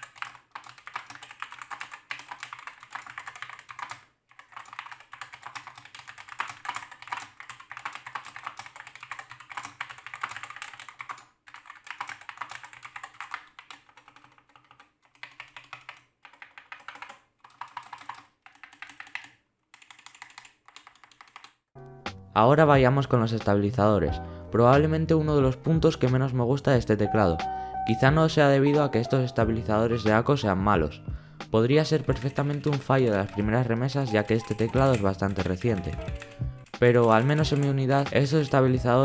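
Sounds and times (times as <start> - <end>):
fast typing on mechanical keyboard: 0.0 - 21.6, 31.9 - 38.8.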